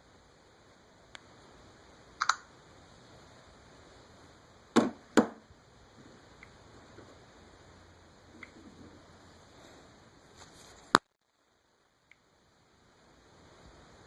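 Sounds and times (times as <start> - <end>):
smartphone handling clicks: 2.2 - 2.4.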